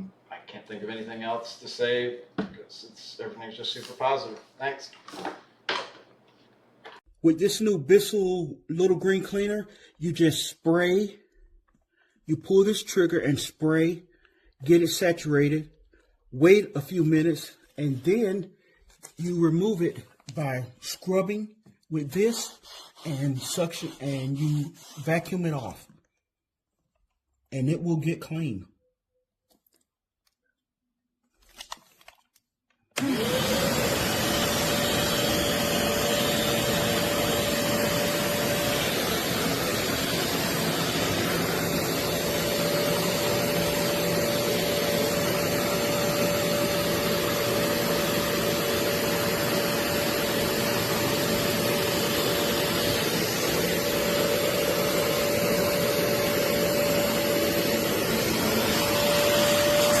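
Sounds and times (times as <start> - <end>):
carpet cleaner motor whine: 33.0 - 60.0.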